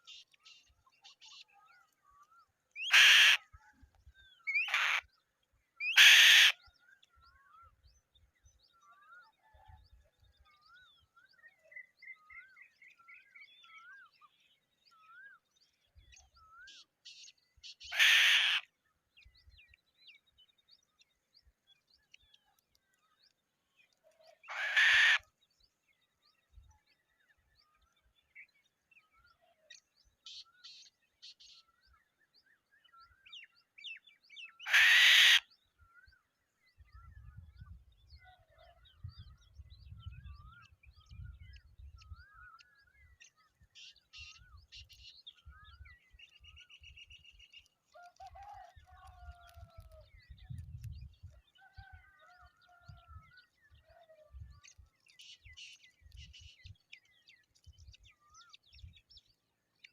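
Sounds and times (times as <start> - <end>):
bird harsh screeching call: 2.8 - 3.4, 5.9 - 6.6, 17.9 - 18.7, 24.5 - 25.2, 34.6 - 35.5
small birds chirping: 35.5 - 59.9
low rumble of wind: 36.7 - 43.7, 48.2 - 55.0.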